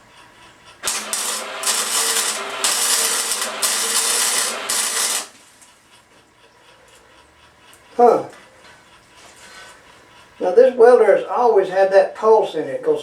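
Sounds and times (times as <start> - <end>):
arc welder crackling hiss: 0.7 - 6.1.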